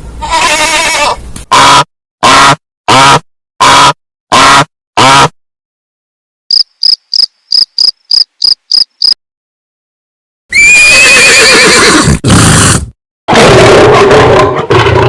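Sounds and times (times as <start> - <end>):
horse whinnying: 0.2 - 1.2, 10.5 - 12.8
cricket chirping: 6.5 - 9.2.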